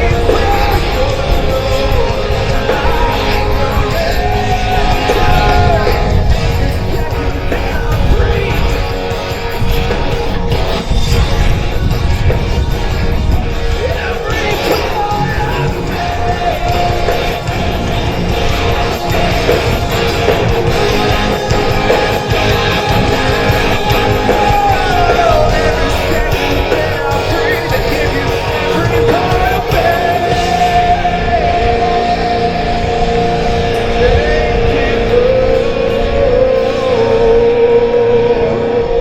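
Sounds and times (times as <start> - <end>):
lead guitar sustained bending notes: 0.0 - 39.0
live rock band playing: 0.0 - 39.0.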